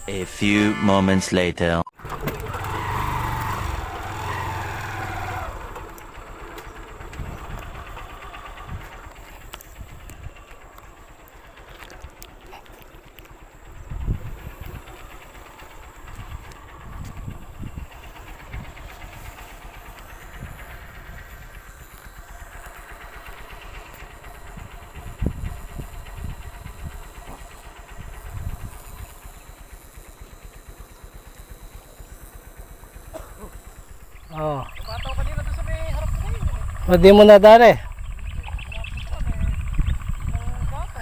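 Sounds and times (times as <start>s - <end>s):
motor humming: 2.0s - 41.0s
low rumble: 4.9s - 28.9s.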